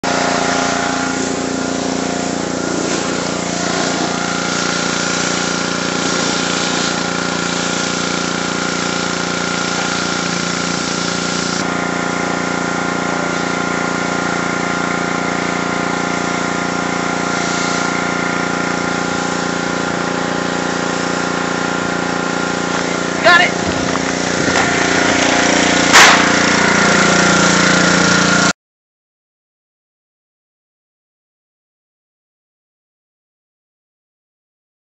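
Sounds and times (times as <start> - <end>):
pressure washer droning: 0.0 - 28.6
spray hissing: 1.1 - 11.7, 17.3 - 18.1, 18.9 - 19.9.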